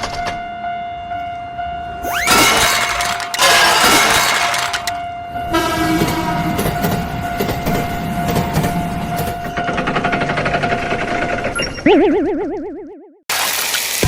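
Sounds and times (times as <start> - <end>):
passing train clatter: 0.0 - 11.6
train horn: 2.0 - 7.0.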